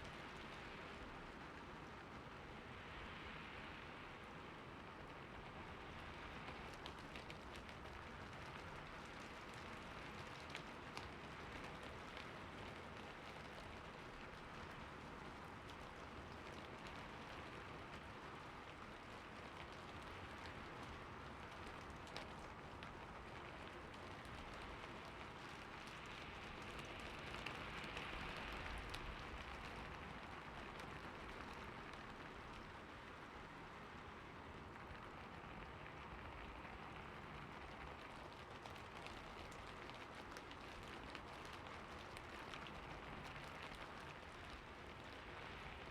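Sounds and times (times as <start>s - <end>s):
rain pattering on roof: 0.0s - 45.9s.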